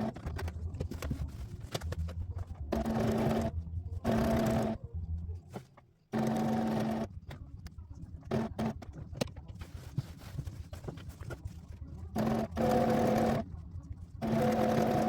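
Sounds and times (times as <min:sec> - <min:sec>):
sewing machine running: 0:02.7 - 0:03.5, 0:04.1 - 0:04.8, 0:06.2 - 0:07.1, 0:12.2 - 0:13.4, 0:14.2 - 0:15.0.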